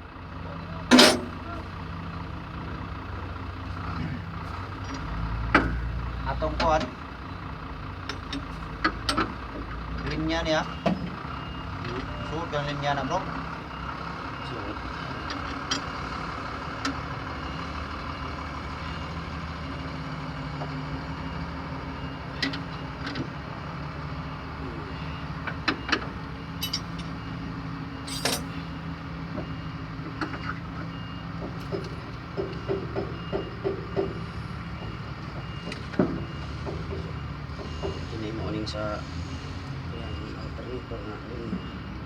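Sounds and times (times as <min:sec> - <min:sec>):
tools clinking on metal: 0:00.9 - 0:01.6, 0:26.6 - 0:27.2, 0:28.1 - 0:28.6.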